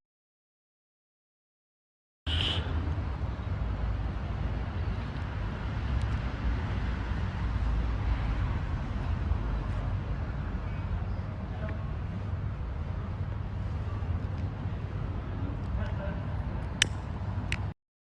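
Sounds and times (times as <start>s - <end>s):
distant traffic rumble: 2.3s - 17.7s.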